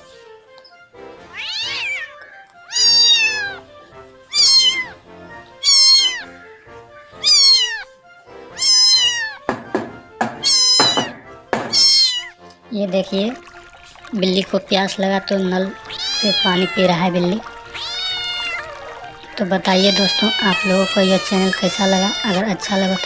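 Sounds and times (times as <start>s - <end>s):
cat meowing: 1.2s - 3.7s, 4.3s - 6.5s, 7.1s - 7.9s, 8.5s - 9.5s, 10.2s - 12.4s, 15.7s - 23.0s
sharp knocks: 9.4s - 12.1s.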